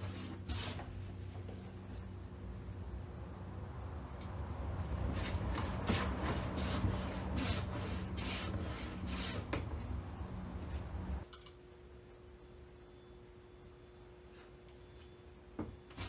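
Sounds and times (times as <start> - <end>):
hand plane shaving wood: 4.8 - 11.2.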